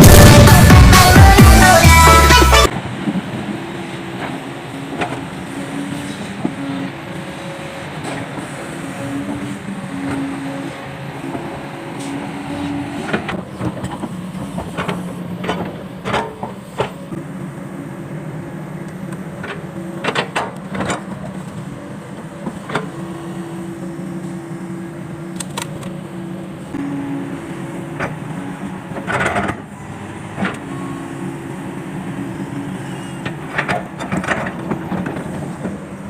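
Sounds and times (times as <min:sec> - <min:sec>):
excavator engine running: 0:00.0 - 0:36.0.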